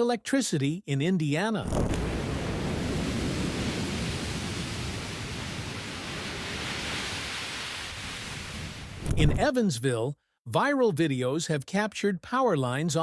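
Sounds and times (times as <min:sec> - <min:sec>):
storm rushing noise: 0:01.7 - 0:09.4.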